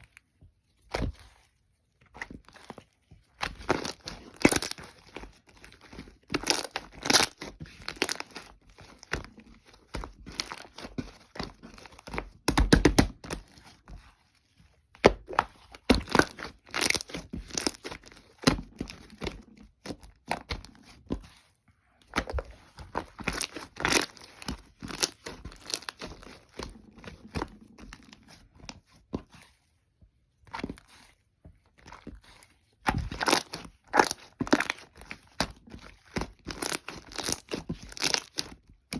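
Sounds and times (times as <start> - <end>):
slime crackling and popping: 3.4 - 9.3, 15.1 - 19.3, 23.0 - 26.6, 32.9 - 38.6.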